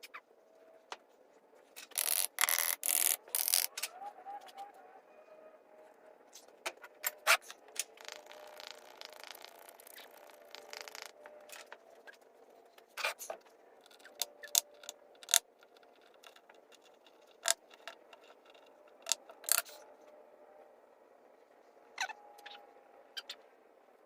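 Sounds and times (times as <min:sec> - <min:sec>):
objects knocking and clicking: 0:01.8 - 0:03.9, 0:06.6 - 0:11.9, 0:13.2 - 0:19.7.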